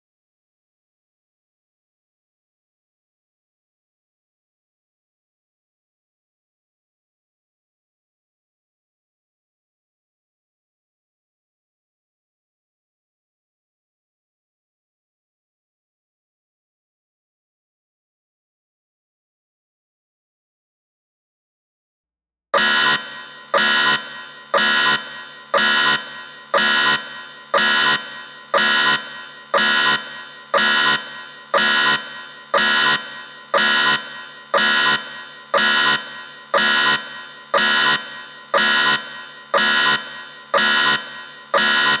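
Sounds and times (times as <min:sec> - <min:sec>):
timer alarm beeping: 0:22.6 - 0:42.0.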